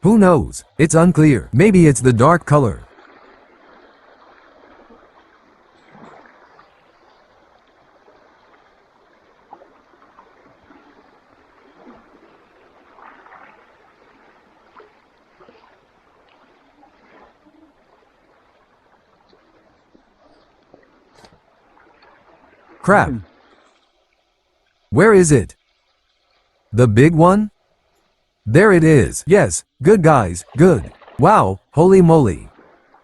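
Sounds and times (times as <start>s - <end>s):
river water gurgling: 0.0s - 26.8s, 32.4s - 33.0s
faint splashes or knocks: 2.9s - 7.0s.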